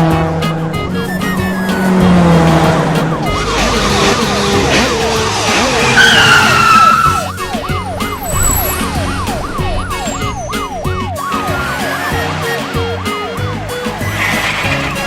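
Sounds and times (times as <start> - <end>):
background music: 0.0 - 15.0
squeal sliding down in pitch: 1.0 - 11.1
cartoon siren swooping tone: 1.0 - 12.0.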